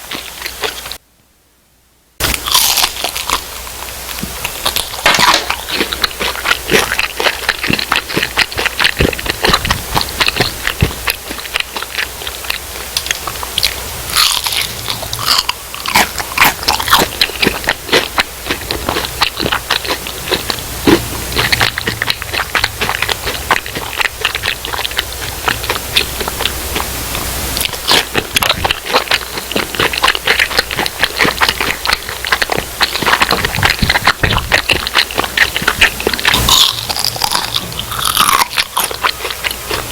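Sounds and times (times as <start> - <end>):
person chewing crispy food: 0.0 - 1.0, 2.2 - 39.9.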